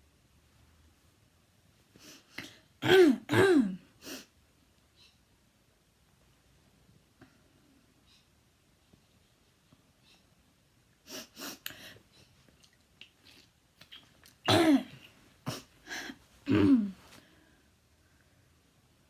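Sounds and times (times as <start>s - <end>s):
person coughing: 2.4s - 3.9s, 14.5s - 17.1s.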